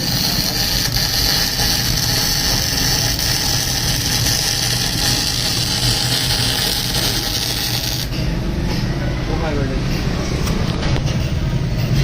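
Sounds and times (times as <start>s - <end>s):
welding arc sizzling hiss: 0.0s - 8.3s.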